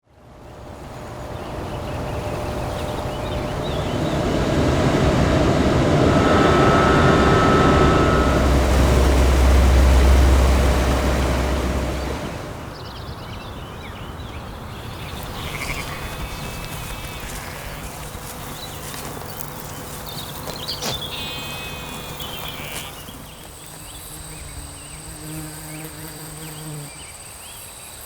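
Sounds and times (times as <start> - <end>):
faint birds chirping: 0.3 - 10.0, 11.5 - 28.0
vehicle passing: 0.6 - 12.8.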